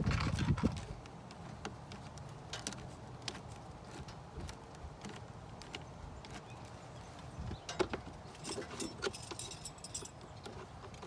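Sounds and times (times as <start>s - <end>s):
hand tools clicking and knocking: 7.6s - 11.0s.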